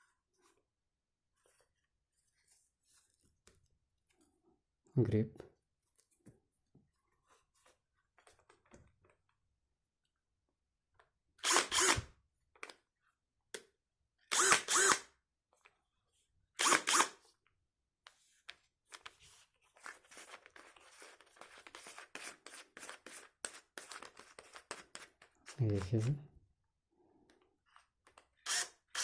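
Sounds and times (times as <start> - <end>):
cordless drill whining: 11.4 - 12.1, 14.3 - 15.1, 16.6 - 17.2, 28.4 - 29.0.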